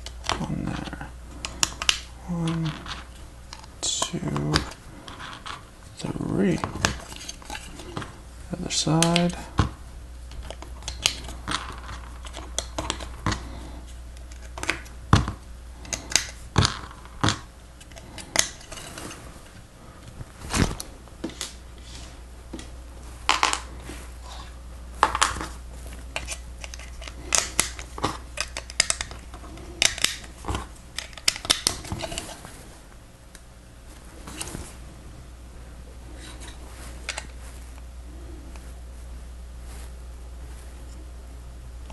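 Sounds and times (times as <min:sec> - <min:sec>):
plastic parts clicking and rattling: 0:26.2 - 0:32.4.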